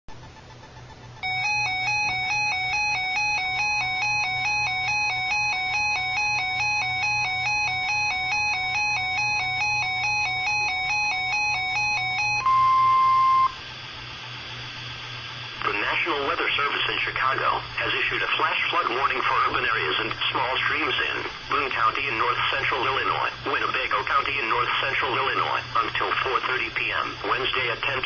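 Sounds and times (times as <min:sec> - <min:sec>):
steady warning tone: 0:00.1 - 0:28.0
shrill two-tone electronic beep: 0:01.2 - 0:13.6.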